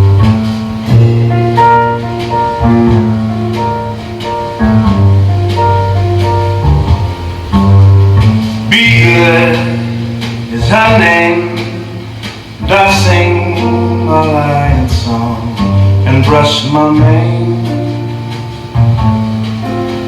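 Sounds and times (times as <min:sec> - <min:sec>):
jazzy song: 0:00.0 - 0:20.0
plucked or keyboard chords: 0:00.0 - 0:20.0
walking bass: 0:00.0 - 0:20.0
person singing: 0:08.7 - 0:18.1.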